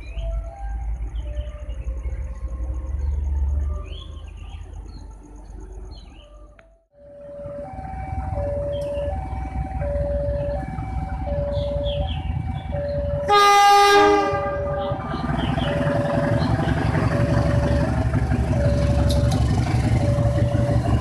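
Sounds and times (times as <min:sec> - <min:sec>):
low rumble of traffic: 0:00.0 - 0:21.0
birds chirping: 0:02.9 - 0:06.6, 0:08.4 - 0:21.0
level crossing two-tone alarm: 0:07.0 - 0:14.7.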